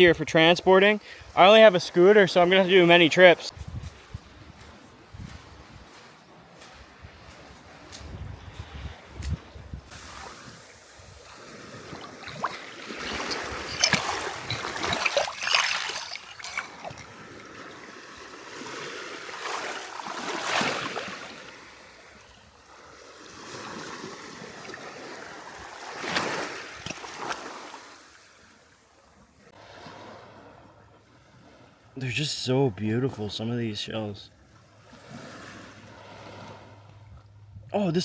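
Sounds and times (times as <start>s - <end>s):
waves washing on beach: 9.9s - 28.7s, 34.5s - 36.9s.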